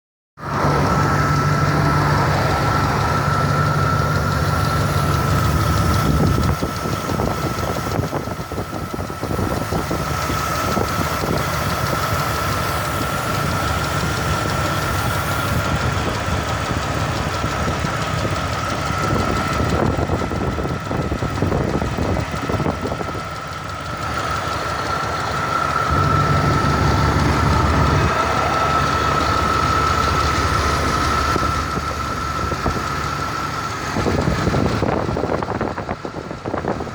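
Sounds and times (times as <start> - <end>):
high-pitched whine: 0.4 - 16.6, 24.0 - 34.8
engine running with knock: 0.4 - 36.9.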